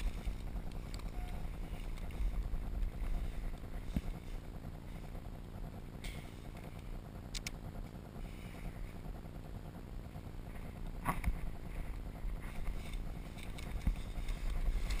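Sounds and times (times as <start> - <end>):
wind and handling rumble: 0.0 - 15.0
sharp clicks: 6.0 - 8.0.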